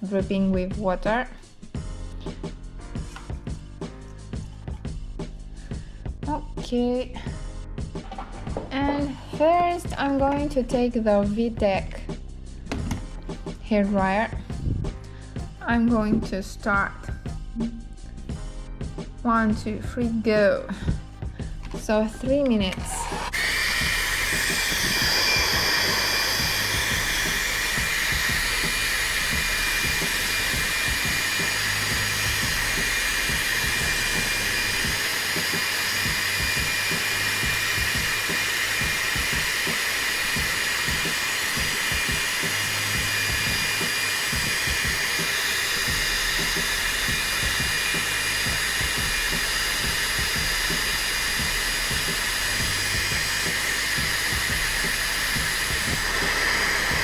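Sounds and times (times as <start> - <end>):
hair dryer running: 12.7 - 18.4, 19.3 - 57.0.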